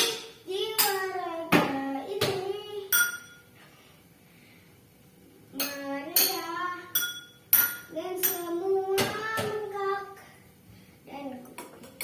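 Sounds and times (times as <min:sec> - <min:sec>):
ringing clink: 0:02.9 - 0:03.5, 0:07.0 - 0:07.9.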